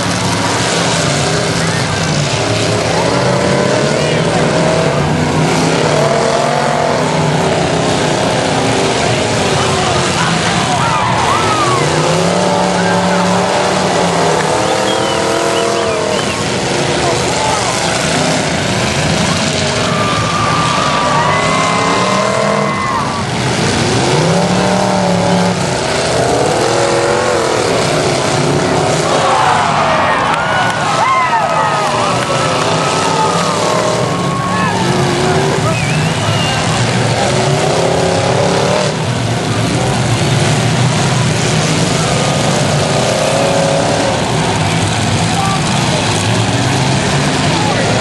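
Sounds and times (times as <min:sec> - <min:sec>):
car engines revving: 0:00.0 - 0:48.0
dense rush of noise: 0:00.0 - 0:48.0.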